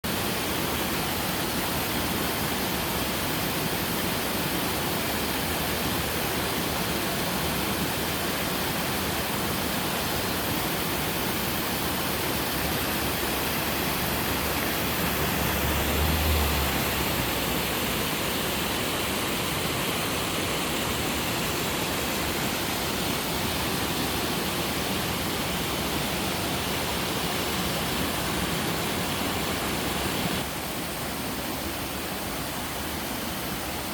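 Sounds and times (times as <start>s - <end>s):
waterfall rushing: 0.0s - 33.9s.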